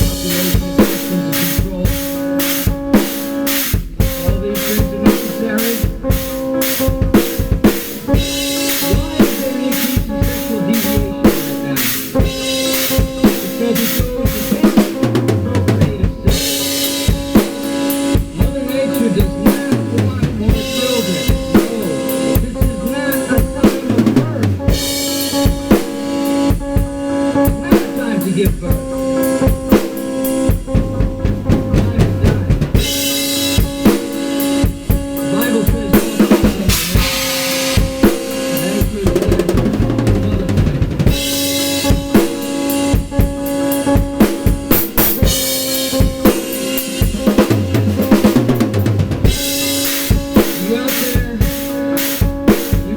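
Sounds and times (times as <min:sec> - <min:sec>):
drum kit playing: 0:00.0 - 0:52.9
cymbal crashes: 0:32.8 - 0:39.1, 0:41.1 - 0:52.9.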